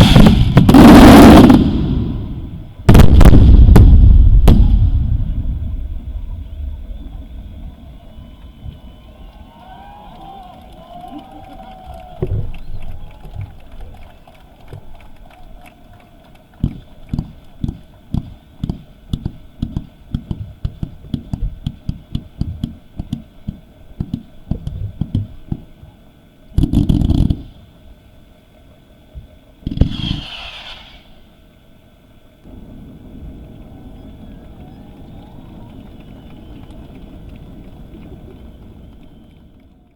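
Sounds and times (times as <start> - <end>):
fireworks bangs: 0.0 - 6.8, 26.5 - 27.7, 29.6 - 31.3.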